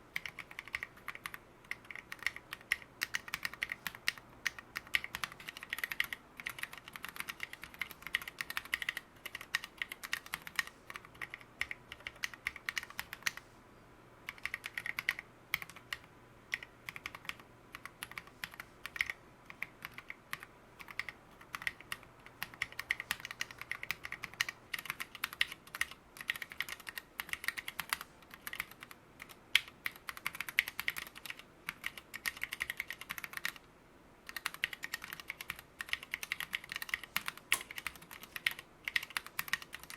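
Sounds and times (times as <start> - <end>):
fast keyboard typing: 0.1 - 13.4, 14.3 - 33.6, 34.3 - 39.9.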